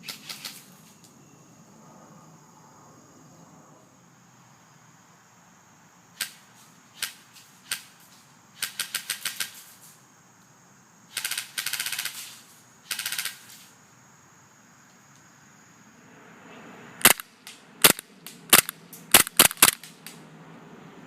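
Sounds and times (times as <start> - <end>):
airsoft gun shooting: 8.6 - 9.6, 11.1 - 12.3, 12.9 - 13.4, 17.0 - 19.9.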